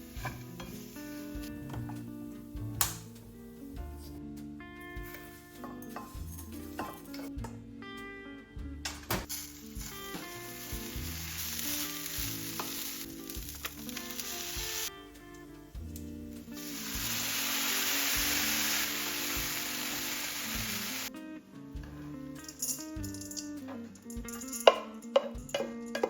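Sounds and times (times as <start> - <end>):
food sizzling in frying pan: 0.0 - 1.6, 9.3 - 14.9, 16.5 - 21.1
soft background music: 0.0 - 26.0.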